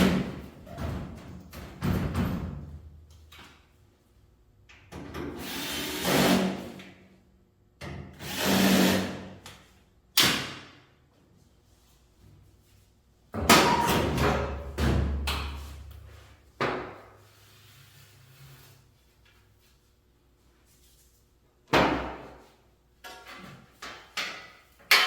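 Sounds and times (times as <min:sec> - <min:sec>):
power drill running: 0:05.4 - 0:06.5, 0:08.2 - 0:09.2.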